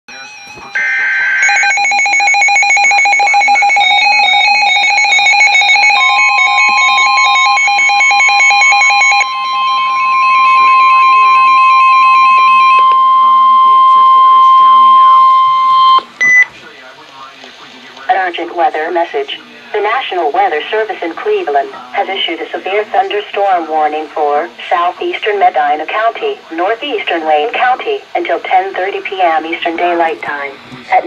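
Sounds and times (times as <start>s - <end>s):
fast warbling electronic alarm: 0.1s - 16.5s
steady warning tone: 0.1s - 16.5s.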